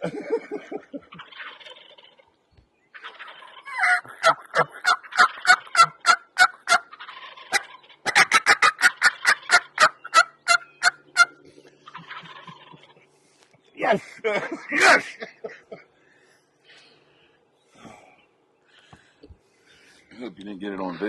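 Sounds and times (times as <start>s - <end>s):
wild turkey yelping: 1.0s - 13.1s.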